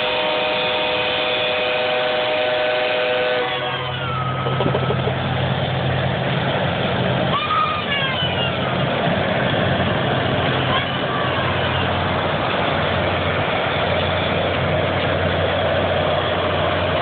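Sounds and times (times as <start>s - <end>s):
machinery rushing noise: 3.4s - 17.0s.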